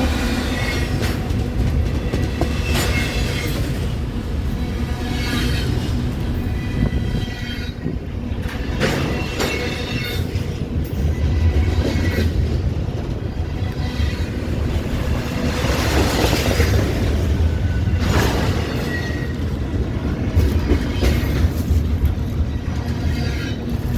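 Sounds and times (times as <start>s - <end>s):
train wheels squealing: 0.0s - 3.9s, 4.5s - 12.6s, 13.3s - 19.7s
freight train wheels rumbling: 0.0s - 23.9s
train cars clanking: 0.0s - 23.9s.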